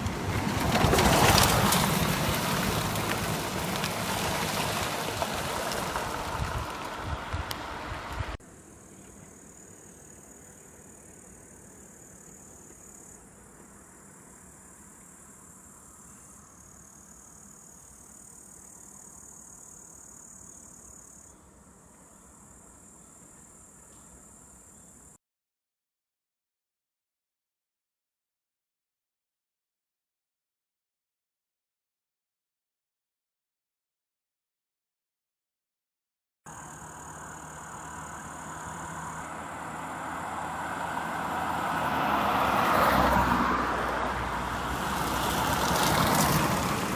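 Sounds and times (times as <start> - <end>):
motor vehicle passing: 0.0 - 8.4, 36.5 - 46.9
insects chirring: 8.5 - 25.2, 36.5 - 42.4.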